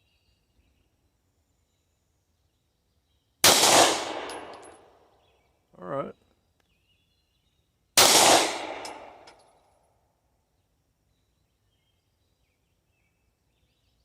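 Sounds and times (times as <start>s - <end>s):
pistol shot: 3.4s - 4.8s, 8.0s - 9.4s.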